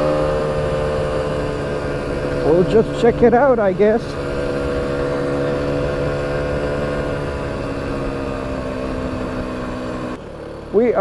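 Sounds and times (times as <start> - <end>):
motorcycle engine running: 0.0 - 11.0.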